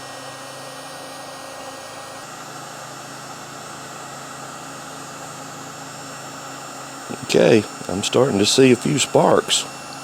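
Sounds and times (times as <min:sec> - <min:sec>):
electric lighter fan hissing: 0:07.1 - 0:10.0.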